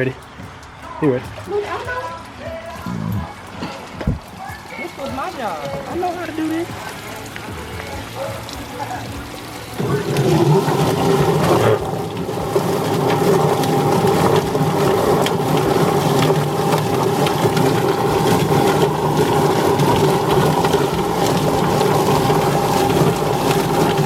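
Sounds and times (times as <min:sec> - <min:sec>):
electric motor humming: 0:01.6 - 0:24.0.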